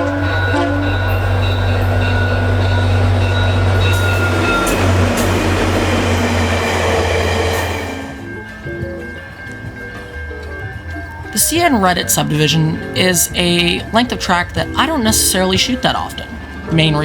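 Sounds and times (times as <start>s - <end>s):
locomotive engine drone: 0.0s - 17.0s
wheels rushing on rail: 0.0s - 17.0s.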